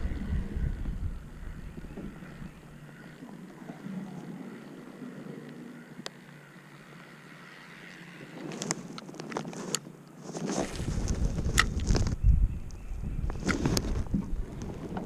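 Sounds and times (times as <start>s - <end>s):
wind buffeting microphone: 0.0s - 2.8s, 10.6s - 15.0s.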